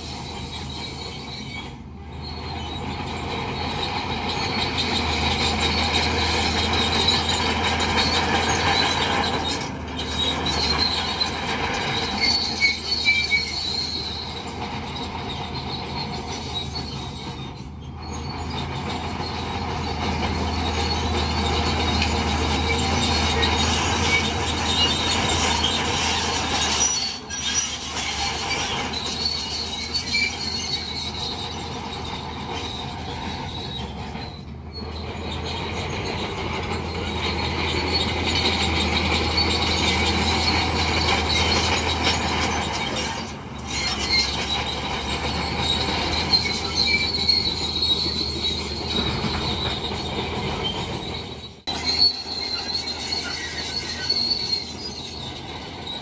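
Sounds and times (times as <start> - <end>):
diesel engine under load: 0.0 - 56.0
steel tracks squealing and clattering: 0.0 - 56.0.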